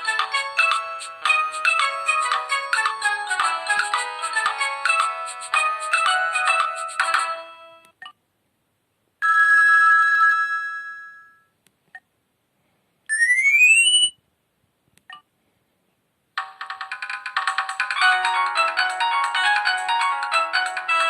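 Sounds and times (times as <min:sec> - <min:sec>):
bell-like phone chime: 0:00.0 - 0:07.9.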